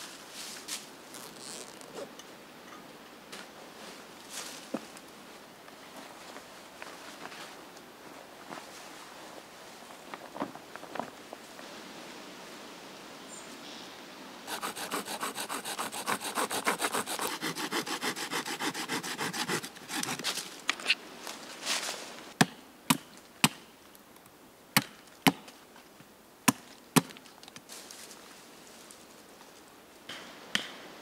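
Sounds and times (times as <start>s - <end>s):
hand saw cutting wood: 14.5s - 20.4s.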